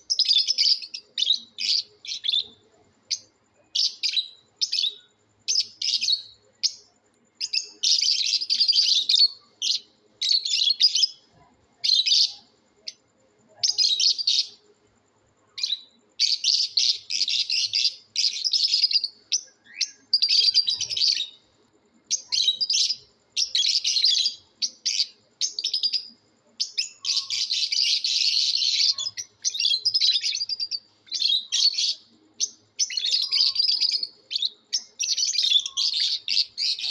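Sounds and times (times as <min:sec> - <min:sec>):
lovebirds chattering: 0:22.1 - 0:36.9.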